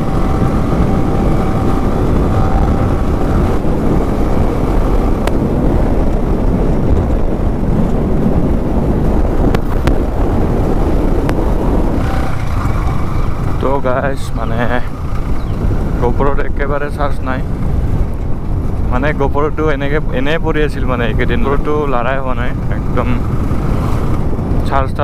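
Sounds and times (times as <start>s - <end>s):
motorcycle engine note: 0.0s - 7.2s, 9.4s - 16.5s
wind rushing over microphone: 0.0s - 25.0s.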